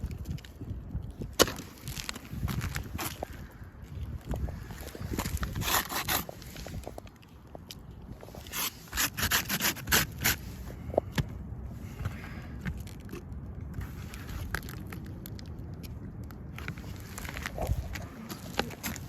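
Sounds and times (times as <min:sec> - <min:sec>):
scraping strokes: 0:05.3 - 0:07.0, 0:08.2 - 0:10.7.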